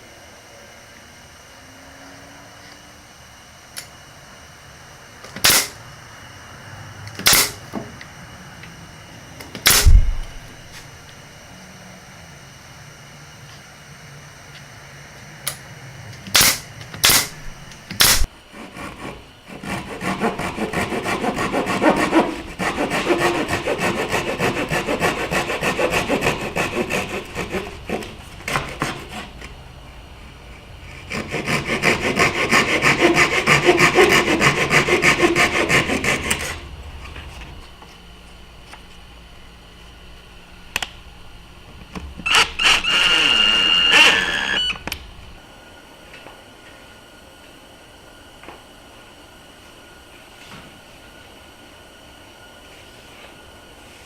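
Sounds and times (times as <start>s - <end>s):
saw cutting wood: 5.4s - 5.8s, 7.2s - 7.6s, 9.6s - 10.6s, 16.2s - 29.5s, 30.8s - 36.7s, 42.2s - 44.8s.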